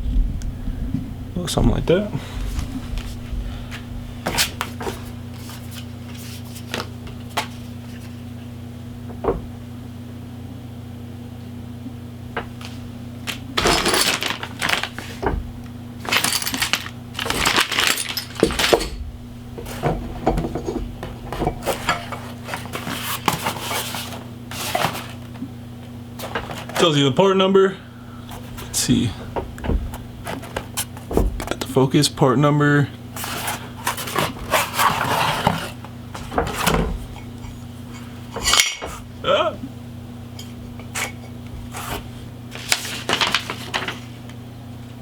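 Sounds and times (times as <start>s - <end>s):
low electrical hum: 0.0s - 45.0s
packaging rustling: 12.7s - 15.3s, 16.0s - 18.9s, 21.6s - 25.4s, 41.8s - 44.1s
metal parts clicking and clinking: 13.3s - 15.0s, 16.0s - 19.0s.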